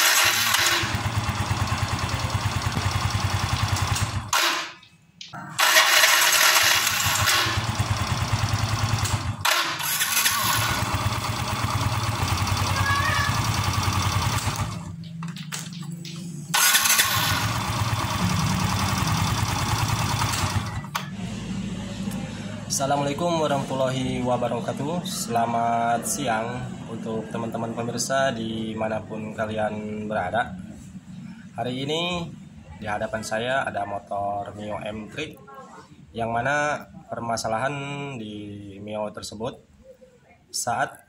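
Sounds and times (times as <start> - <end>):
scooter engine running: 0.0 - 4.6, 5.6 - 15.5, 16.5 - 22.8.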